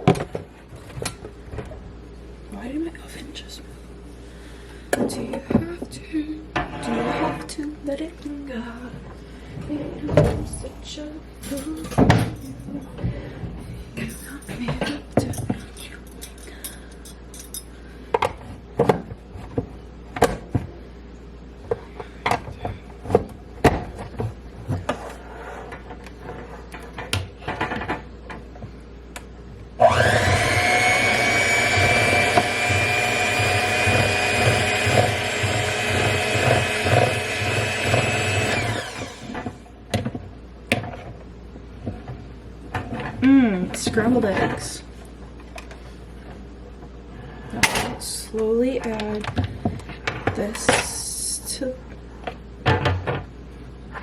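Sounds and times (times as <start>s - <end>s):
electric kitchen mixer running: 29.8s - 39.6s.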